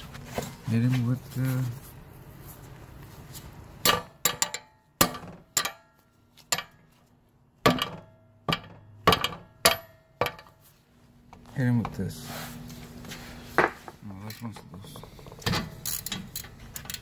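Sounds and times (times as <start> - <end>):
hammer striking steel: 3.8 - 6.9, 7.6 - 10.6.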